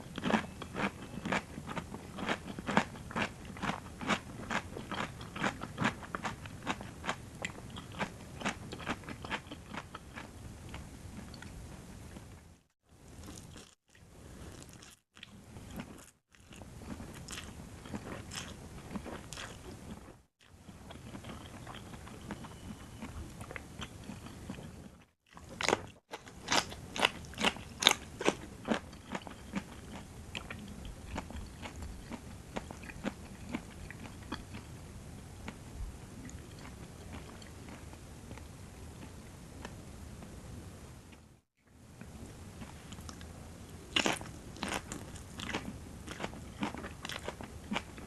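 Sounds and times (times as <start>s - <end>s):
crunchy bites and chewing: 0.0s - 11.5s, 13.1s - 34.7s, 43.9s - 48.0s.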